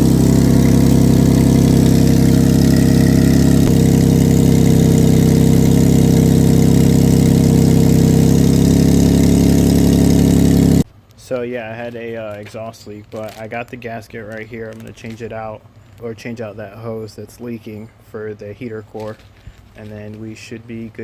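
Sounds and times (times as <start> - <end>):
rough car engine idling: 0.0 - 10.8.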